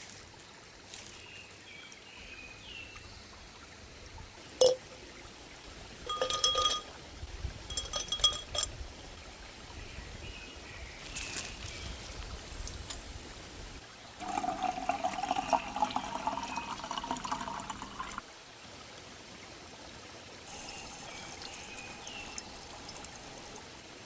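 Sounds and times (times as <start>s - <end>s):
cookware clinking: 4.6s - 5.0s, 6.0s - 7.0s, 7.7s - 8.8s.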